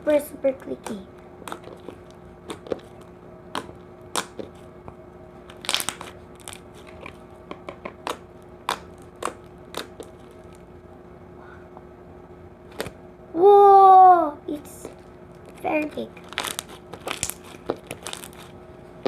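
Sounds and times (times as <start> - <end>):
slime clicking and popping: 3.5 - 4.5, 7.8 - 10.2.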